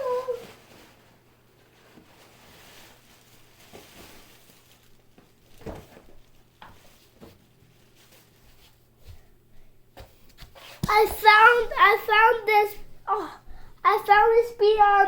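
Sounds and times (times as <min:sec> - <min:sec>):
small objects knocking and rustling: 0:01.7 - 0:08.8.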